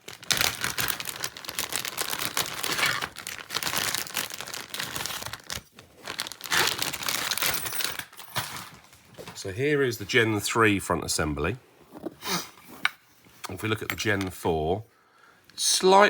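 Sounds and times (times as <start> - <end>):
plastic packaging rustling: 0.0 - 9.5.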